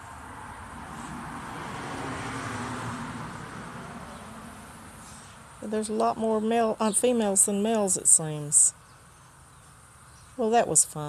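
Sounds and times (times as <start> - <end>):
vehicle passing by: 0.0 - 6.0.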